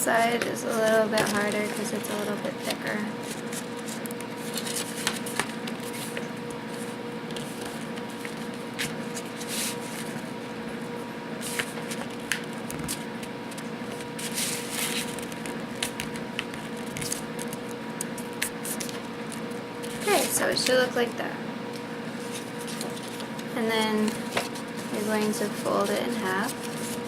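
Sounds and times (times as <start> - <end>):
background hum: 0.0 - 27.0
paper being folded: 0.2 - 10.7, 11.4 - 20.9, 21.7 - 27.0.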